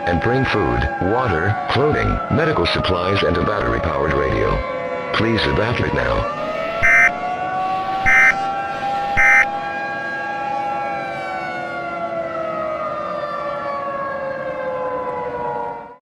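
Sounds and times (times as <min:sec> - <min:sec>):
siren winding down: 0:03.6 - 0:16.0
warbling alert data tones: 0:06.2 - 0:09.7.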